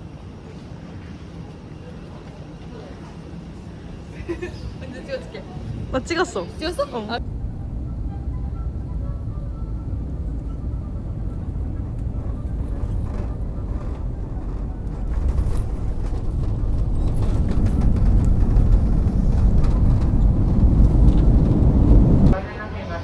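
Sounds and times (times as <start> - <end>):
vehicle running: 6.6 - 22.4.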